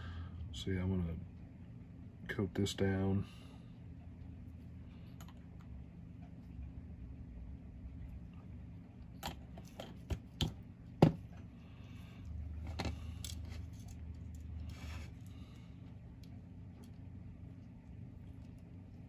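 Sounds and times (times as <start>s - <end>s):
soft rubbing and scraping: 13.4s - 15.4s.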